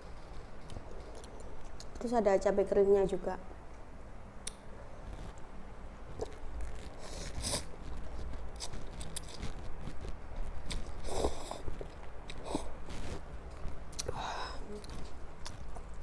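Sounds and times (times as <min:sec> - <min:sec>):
chewing noodles: 0:06.1 - 0:16.0.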